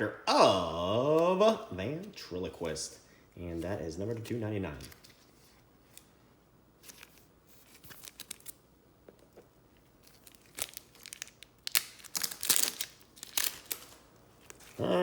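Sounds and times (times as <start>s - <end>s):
cards being handled: 3.6s - 6.2s, 6.8s - 8.6s
wrapper tearing and crinkling: 6.8s - 8.6s, 10.0s - 14.8s.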